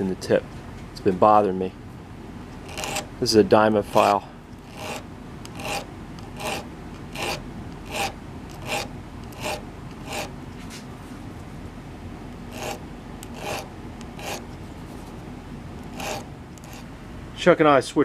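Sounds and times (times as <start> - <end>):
file rasping on steel: 2.6 - 3.1, 3.8 - 10.4, 12.5 - 14.6, 15.8 - 16.9.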